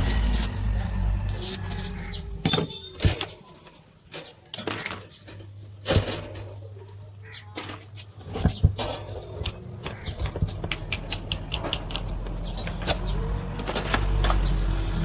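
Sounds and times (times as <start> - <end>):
fan motor humming: 0.0 - 4.1, 4.8 - 15.0
handling knocks and clicks: 1.4 - 15.0.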